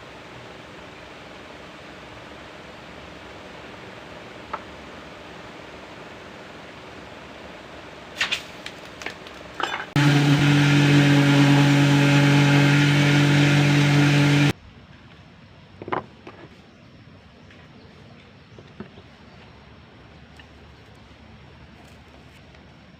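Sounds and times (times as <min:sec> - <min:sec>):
electric power tool running: 0:10.0 - 0:14.5.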